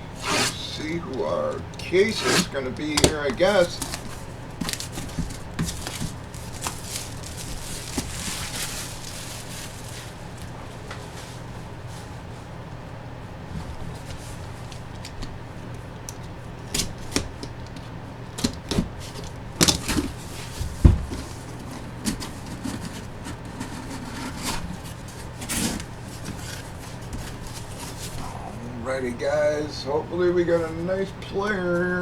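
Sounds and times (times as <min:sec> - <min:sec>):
cardboard box rustling: 0:00.0 - 0:12.1, 0:18.5 - 0:32.0
low steady hum: 0:00.0 - 0:32.0
box thump: 0:02.2 - 0:06.8.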